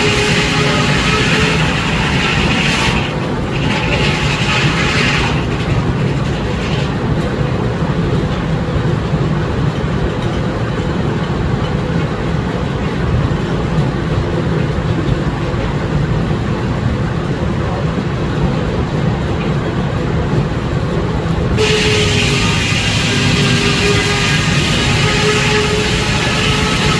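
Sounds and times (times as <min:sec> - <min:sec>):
sawmill machinery din: 0:00.0 - 0:08.7, 0:21.4 - 0:26.9.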